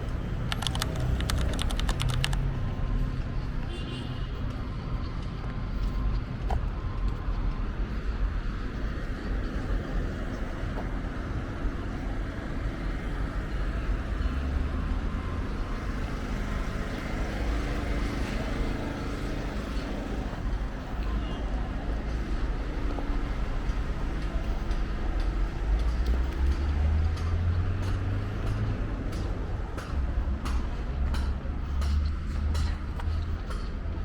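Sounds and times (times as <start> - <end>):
road traffic rumble: 0.0 - 34.0.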